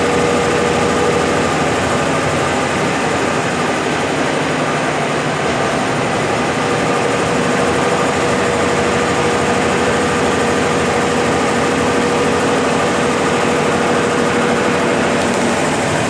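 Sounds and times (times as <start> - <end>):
steady whine: 0.0 - 16.0
washing machine spinning: 0.0 - 16.0.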